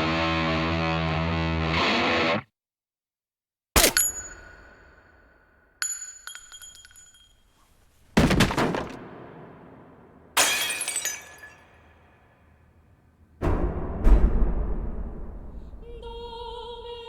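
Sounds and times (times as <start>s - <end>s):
glass shattering: 3.8s - 5.0s, 5.8s - 8.6s, 10.4s - 12.2s.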